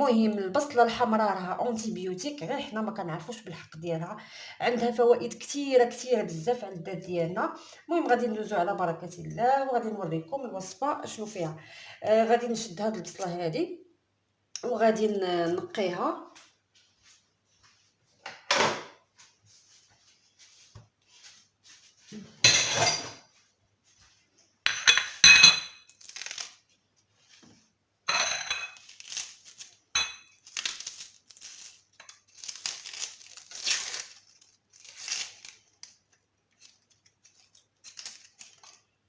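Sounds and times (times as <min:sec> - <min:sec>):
onion skin crackling: 0:25.9 - 0:26.7, 0:28.8 - 0:38.9.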